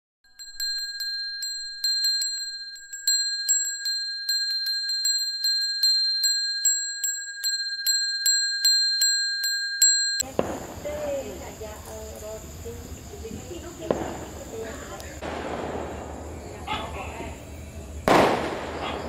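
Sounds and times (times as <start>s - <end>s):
small high-pitched bell ringing: 0.2s - 10.4s.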